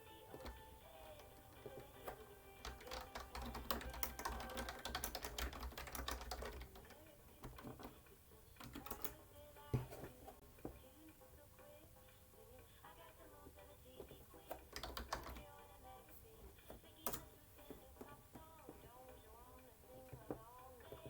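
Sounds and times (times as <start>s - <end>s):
computer keyboard typing: 0.0s - 9.9s, 14.4s - 15.7s, 16.6s - 18.8s.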